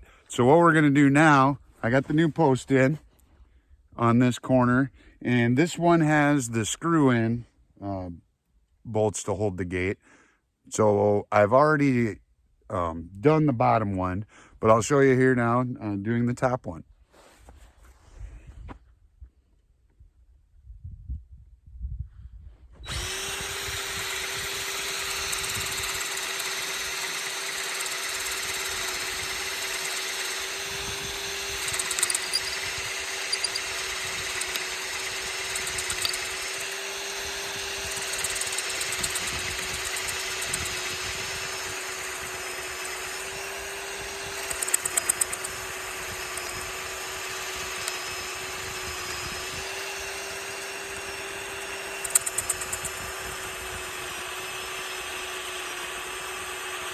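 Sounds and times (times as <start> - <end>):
power drill running: 22.8 - 56.9
rattling clicks: 31.6 - 32.7, 33.3 - 34.7, 35.4 - 36.4, 44.4 - 45.6, 52.0 - 53.0.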